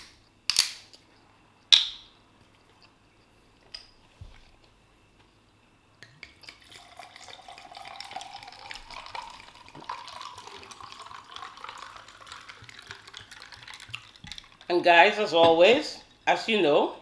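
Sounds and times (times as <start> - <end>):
drink pouring into glass: 6.2 - 15.3.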